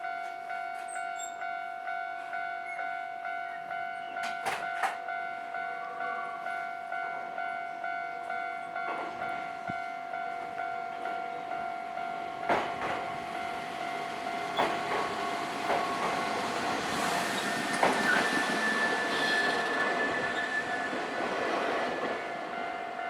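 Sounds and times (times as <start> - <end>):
level crossing warning bell: 0.0 - 23.0
train wheels knocking on rail joints: 12.3 - 20.1
high wheel squeal: 15.9 - 21.3.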